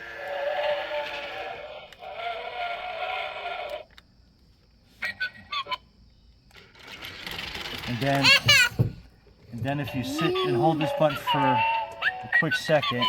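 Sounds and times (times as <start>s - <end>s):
buzzy bleating toy calls: 9.9s - 13.0s.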